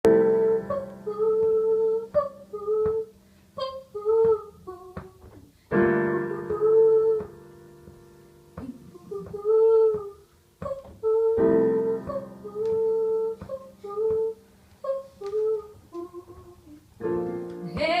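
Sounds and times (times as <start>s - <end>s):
woman singing: 0.0s - 7.5s, 8.6s - 18.0s.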